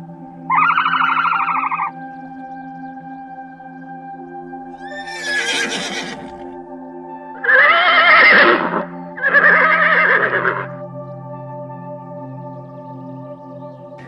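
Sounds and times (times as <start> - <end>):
soft background music: 0.0 - 14.0
horse whinnying: 4.8 - 6.6, 7.4 - 10.6.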